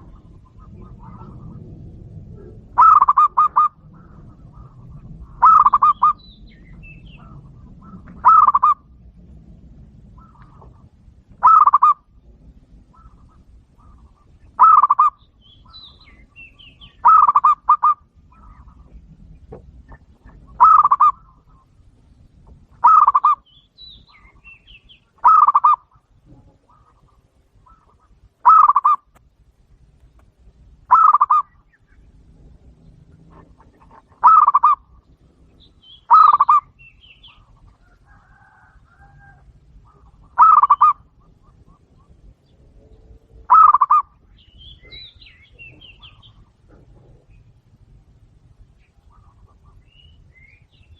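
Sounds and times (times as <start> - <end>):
dove cooing: 0.0 - 9.2, 10.0 - 21.8, 22.6 - 29.2, 30.1 - 42.4, 43.1 - 47.6.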